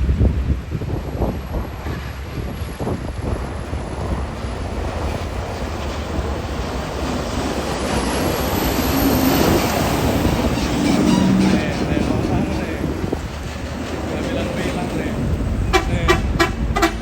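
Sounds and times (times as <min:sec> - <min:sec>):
bus engine rumbling: 0:00.0 - 0:17.0.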